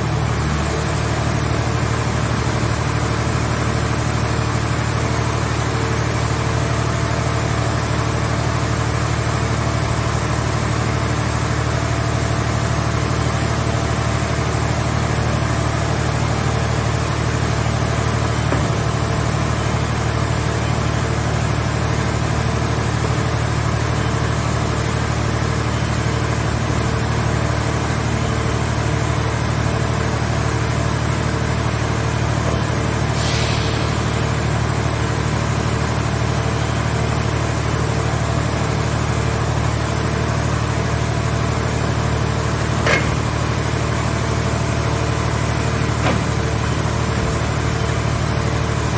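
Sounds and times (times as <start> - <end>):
engine and hydraulic drone: 0.0 - 48.9
short hiss: 33.2 - 34.0.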